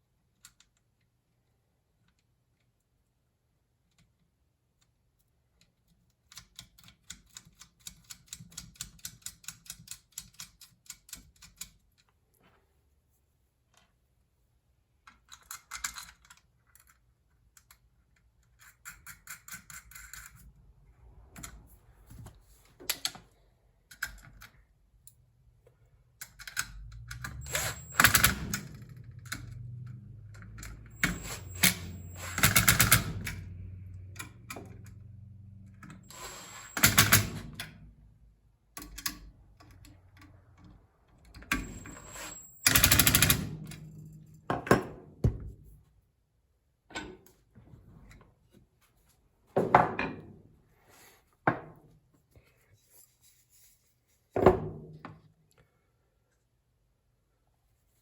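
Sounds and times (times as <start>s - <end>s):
mechanical clicking and rattling: 26.2s - 33.5s, 41.4s - 44.2s.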